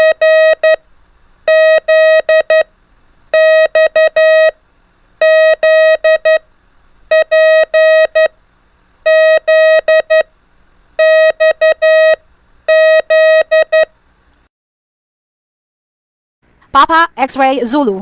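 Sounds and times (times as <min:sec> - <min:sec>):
morse code beeps: 0:00.0 - 0:00.8, 0:01.5 - 0:02.7, 0:03.4 - 0:04.6, 0:05.2 - 0:06.4, 0:07.1 - 0:08.3, 0:09.1 - 0:10.3, 0:11.0 - 0:13.9.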